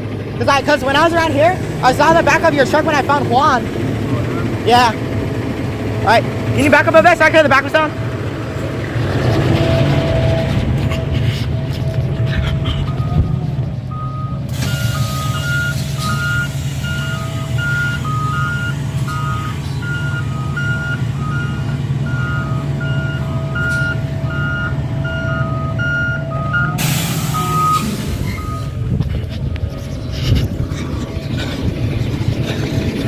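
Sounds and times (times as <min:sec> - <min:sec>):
truck engine running: 0:00.0 - 0:33.0
two-tone backup alarm beeping: 0:12.9 - 0:28.8
loud hiss: 0:26.8 - 0:28.4.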